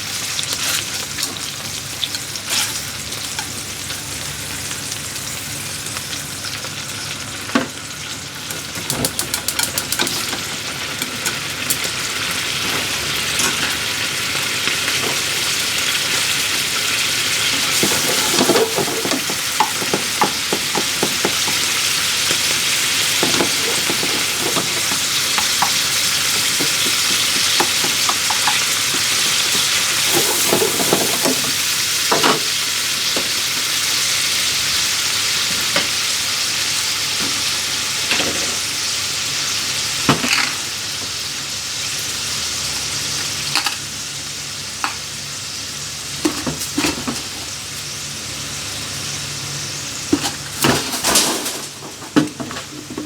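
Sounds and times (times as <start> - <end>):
food sizzling in a frying pan: 0.0 - 53.0
utensil scraping a pan: 17.5 - 31.6.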